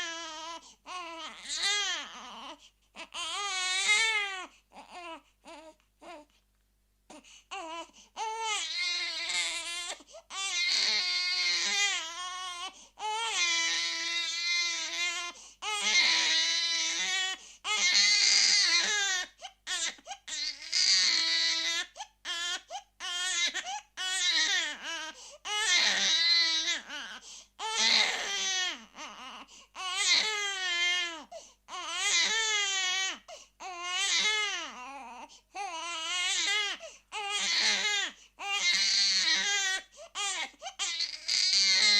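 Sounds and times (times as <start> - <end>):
infant screaming and crying: 0.0 - 6.3, 7.1 - 41.9
infant gasping for breath: 0.6 - 0.9, 2.5 - 3.0, 7.1 - 8.2, 9.9 - 10.3, 12.6 - 13.0, 15.3 - 15.6, 17.3 - 17.7, 25.1 - 25.5, 27.2 - 27.6, 29.4 - 29.8, 31.3 - 31.7, 33.2 - 33.6, 35.2 - 35.6, 36.8 - 37.1, 38.1 - 38.4, 39.8 - 40.8.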